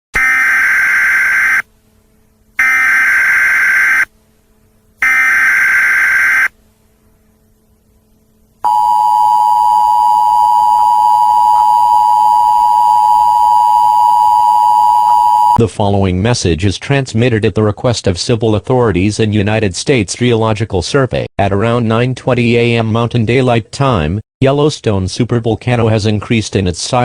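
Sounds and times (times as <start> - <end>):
data tone bursts: 0.2 - 1.6, 2.6 - 4.1, 5.0 - 6.5.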